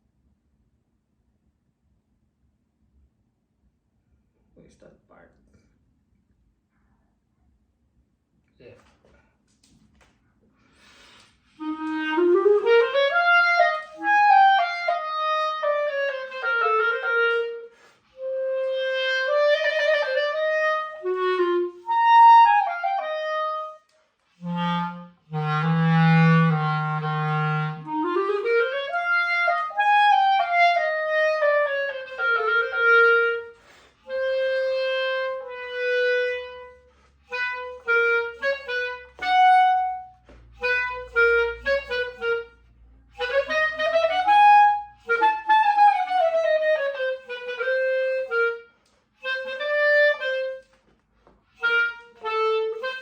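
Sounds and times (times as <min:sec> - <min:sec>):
solo clarinet playing: 0:10.9 - 0:50.8, 0:51.5 - 0:53.0.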